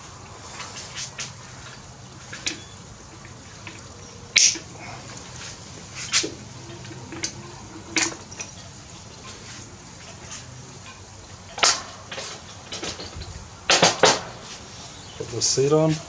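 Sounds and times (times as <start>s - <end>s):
faint steady hum: 0.0s - 16.0s
sharp clicks and knocks: 11.6s - 14.6s.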